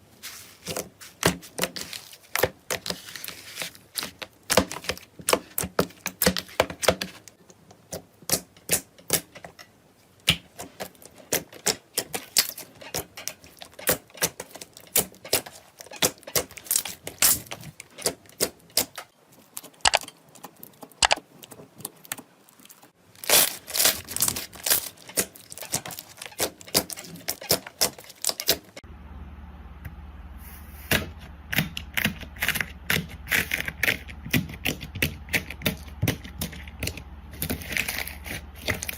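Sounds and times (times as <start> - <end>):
slime crackling and popping: 19.6 - 28.8
low hum: 28.8 - 38.9.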